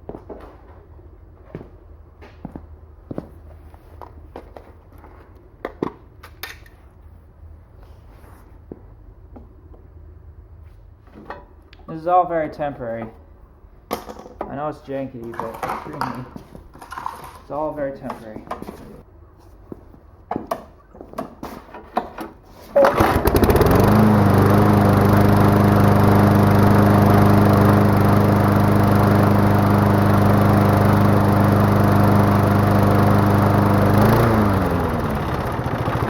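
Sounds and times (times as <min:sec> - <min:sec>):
lawn mower engine running: 0:22.8 - 0:36.0.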